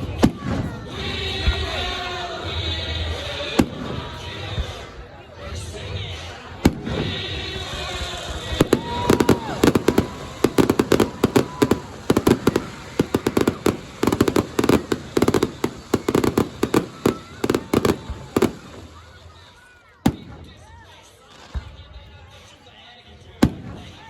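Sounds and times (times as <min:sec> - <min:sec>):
fireworks bangs and crackles: 0:00.0 - 0:24.0.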